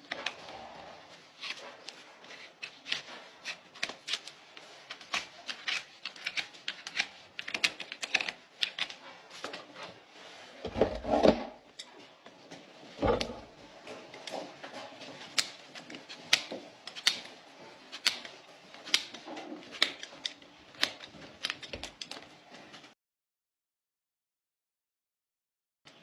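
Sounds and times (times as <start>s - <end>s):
hoof trimming clicks and snips: 1.4s - 9.7s, 11.7s - 22.8s.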